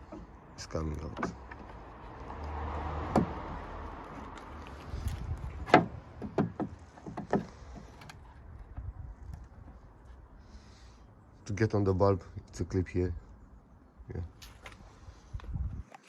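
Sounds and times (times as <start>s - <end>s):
sharp plastic clicks and knocks: 5.6s - 9.8s.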